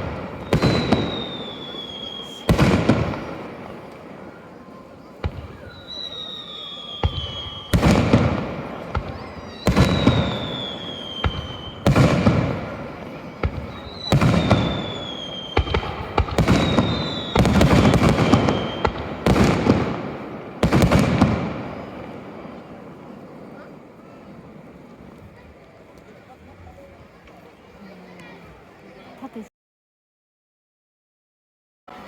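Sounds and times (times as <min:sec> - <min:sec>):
falling firework whistles: 0:00.0 - 0:23.8
fireworks booming: 0:00.0 - 0:27.4.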